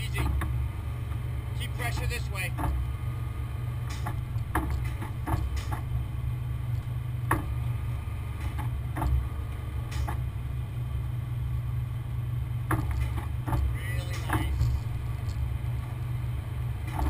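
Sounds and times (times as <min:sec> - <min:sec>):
sharp clicks and knocks: 0:00.0 - 0:02.9, 0:03.8 - 0:06.0, 0:06.7 - 0:07.8, 0:08.4 - 0:09.3, 0:09.9 - 0:10.3, 0:12.6 - 0:16.0
truck engine rumbling: 0:00.0 - 0:17.0.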